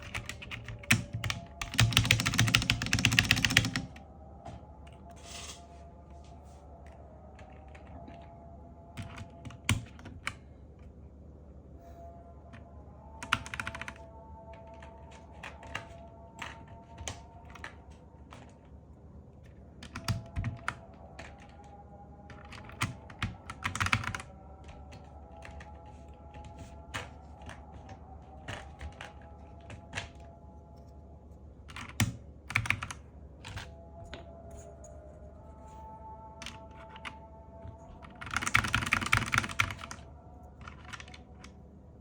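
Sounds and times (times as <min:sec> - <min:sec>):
mechanical keyboard typing clacks: 0:00.0 - 0:04.0, 0:22.3 - 0:25.7, 0:31.7 - 0:33.7, 0:38.0 - 0:40.0, 0:40.6 - 0:41.5.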